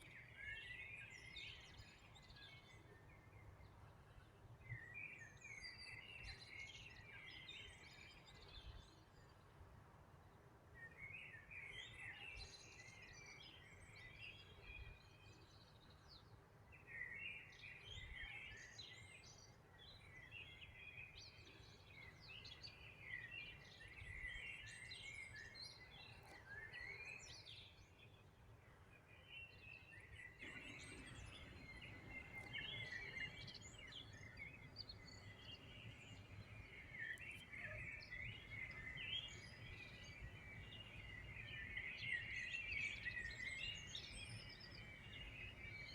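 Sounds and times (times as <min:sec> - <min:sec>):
songbirds chirping and trilling: 0:00.0 - 0:45.9.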